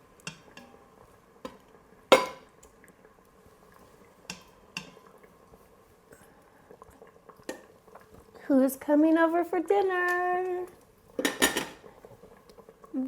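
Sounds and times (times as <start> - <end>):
faint steady hum: 0.0 - 13.0
utensil clinking steel pot: 1.4 - 2.5, 11.2 - 11.8.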